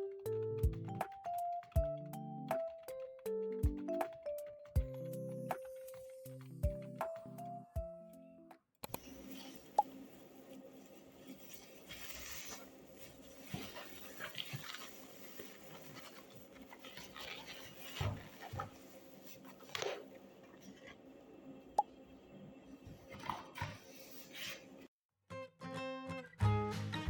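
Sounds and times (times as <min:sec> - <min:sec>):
rustles and scrapes: 0:09.1 - 0:21.2, 0:22.9 - 0:24.9.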